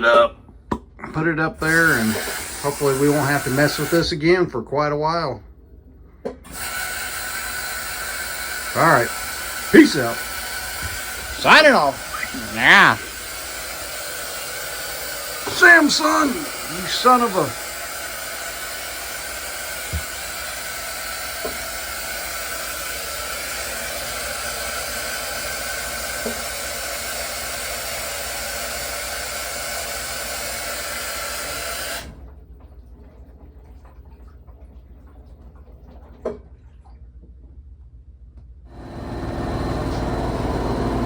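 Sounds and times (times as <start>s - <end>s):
washing machine whooshing hiss: 1.6s - 4.1s, 6.5s - 32.2s, 38.7s - 41.0s
low motor hum: 38.7s - 41.0s.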